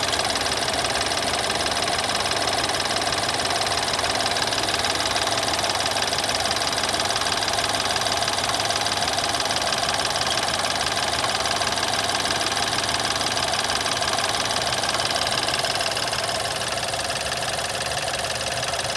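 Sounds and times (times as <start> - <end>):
engine rattling clatter: 0.0 - 18.9.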